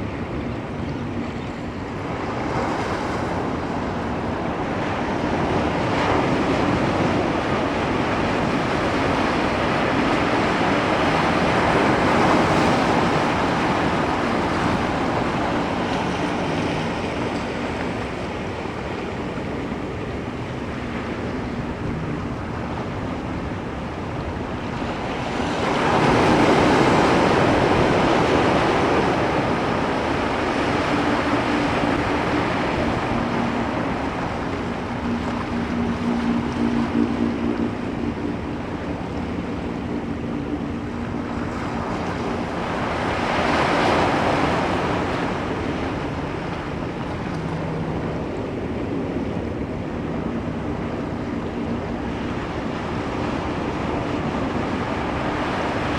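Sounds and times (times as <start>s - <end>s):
ocean waves breaking: 0.0s - 55.9s.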